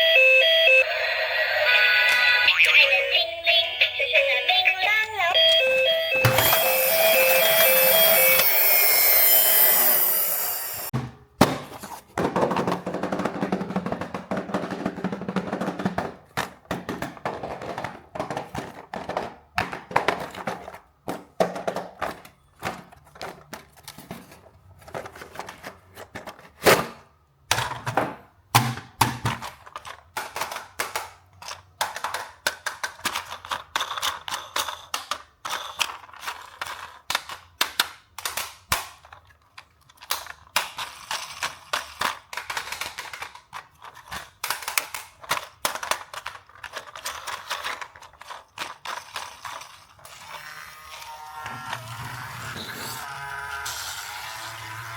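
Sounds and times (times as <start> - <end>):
music: 5.6 - 8.6.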